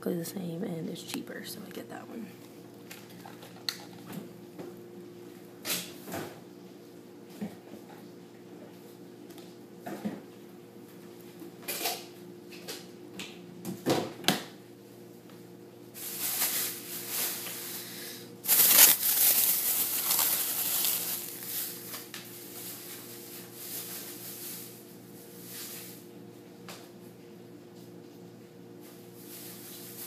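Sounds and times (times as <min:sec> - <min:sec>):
plastic bag rustling: 0:16.0 - 0:17.6, 0:18.4 - 0:22.0.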